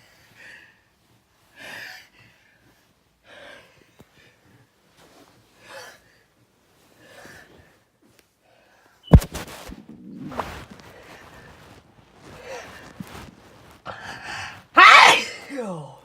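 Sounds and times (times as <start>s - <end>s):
person gasping breaths: 13.9s - 14.7s
loud sneeze: 14.8s - 15.8s.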